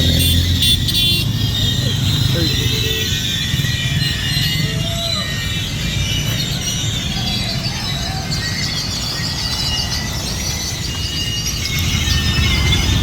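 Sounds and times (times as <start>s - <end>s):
chorus of bird chirps: 0.0s - 13.0s
low rumble of road traffic: 0.0s - 13.0s.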